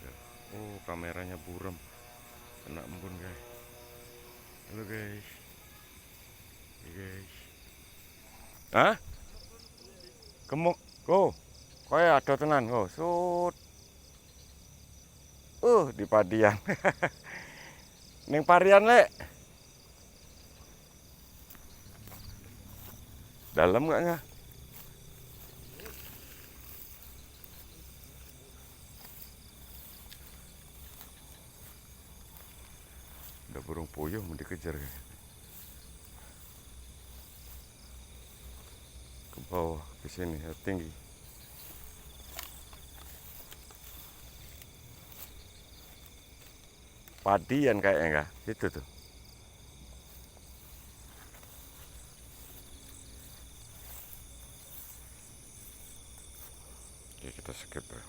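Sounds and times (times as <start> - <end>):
crickets and insects trilling: 0.0 - 58.0.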